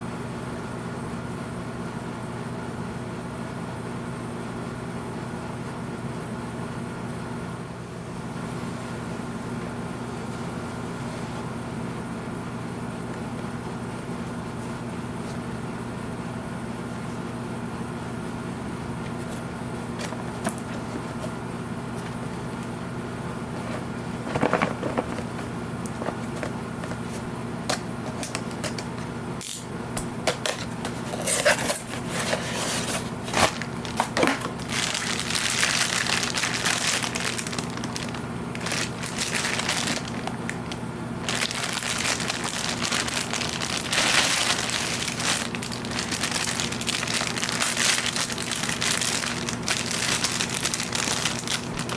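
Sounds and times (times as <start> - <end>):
steady low hum: 7.8 - 51.9
plastic packaging crinkling: 28.0 - 29.6, 30.6 - 51.9.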